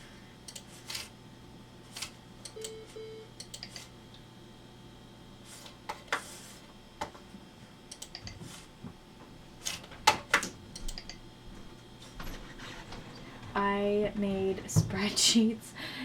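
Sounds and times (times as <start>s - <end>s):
computer clicks and taps: 7.9s - 8.4s, 10.3s - 11.2s.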